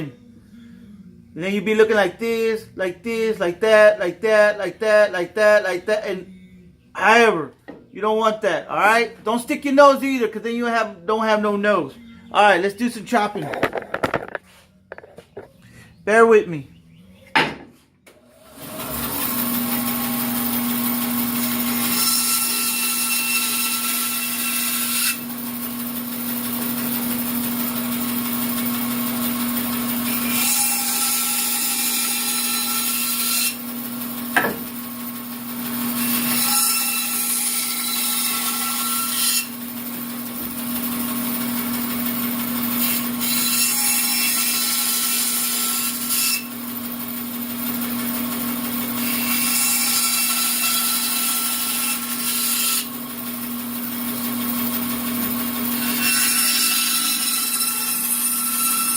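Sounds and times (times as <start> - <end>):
sharp knock: 17.4 - 17.8
bandsaw motor hum: 18.1 - 58.9
saw blade cutting wood: 18.1 - 58.9.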